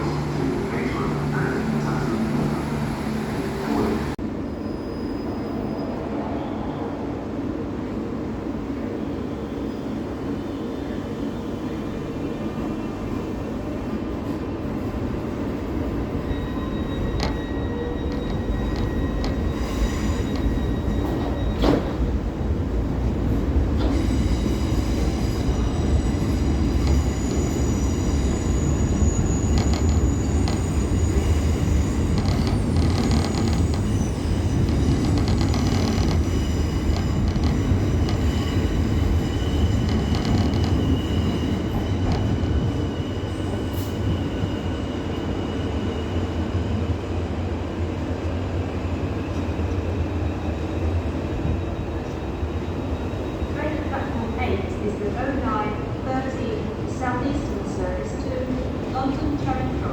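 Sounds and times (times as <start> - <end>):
train wheels squealing: 0.0 - 6.8, 16.0 - 22.2, 23.8 - 47.2, 48.9 - 54.6
train rumbling: 0.0 - 8.6, 13.0 - 59.9.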